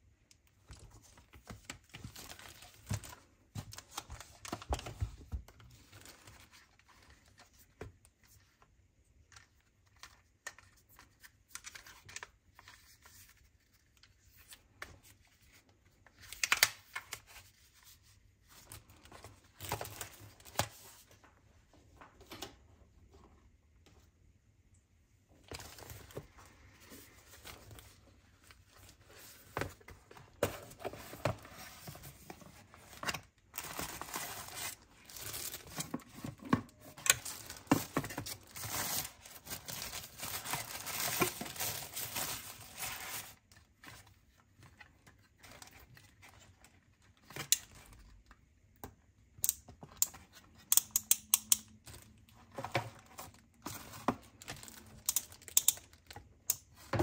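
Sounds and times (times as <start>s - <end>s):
packaging wrap tearing and crinkling: 33.8s - 35.7s.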